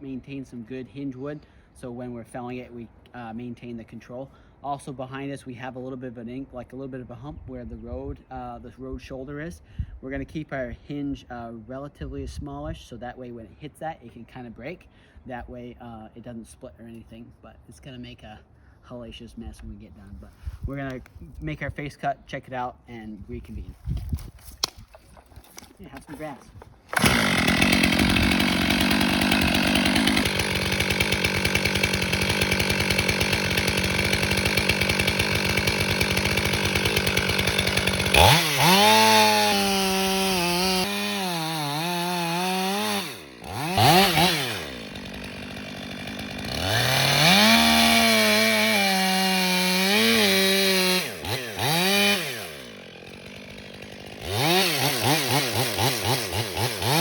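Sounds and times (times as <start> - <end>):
chainsaw cutting and revving: 25.6 - 57.0.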